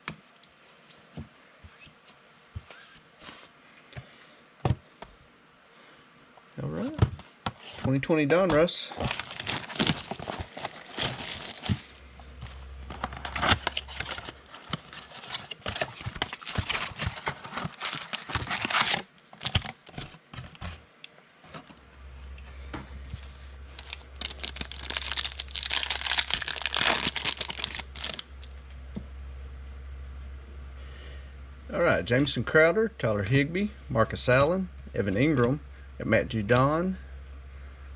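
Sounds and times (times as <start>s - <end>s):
cards being shuffled: 8.5s - 20.8s, 23.2s - 28.5s
wrapper tearing and crinkling: 8.9s - 12.0s, 12.9s - 19.9s, 23.7s - 28.5s.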